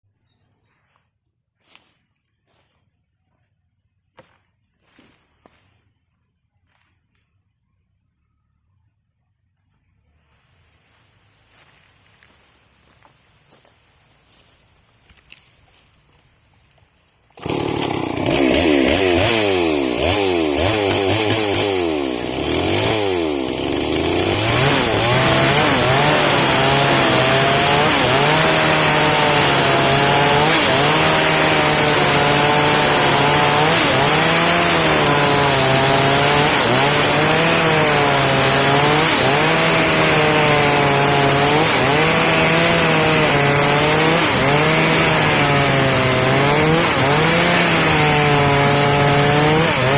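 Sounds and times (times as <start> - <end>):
chainsaw revving and cutting: 17.4 - 49.9.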